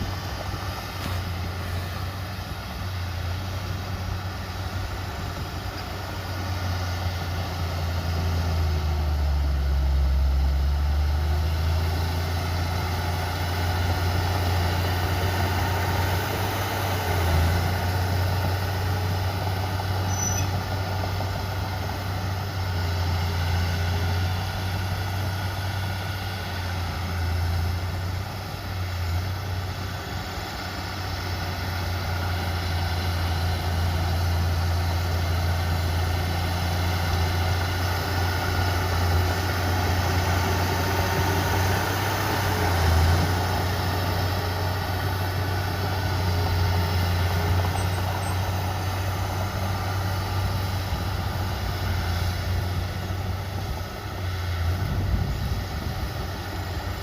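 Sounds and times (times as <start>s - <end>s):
diesel earthmoving machinery running: 0.0s - 57.0s.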